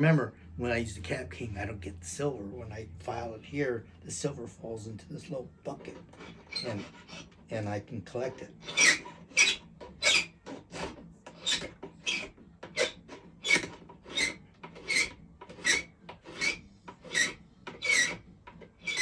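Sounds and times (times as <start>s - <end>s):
hand file scraping metal: 5.1s - 19.0s.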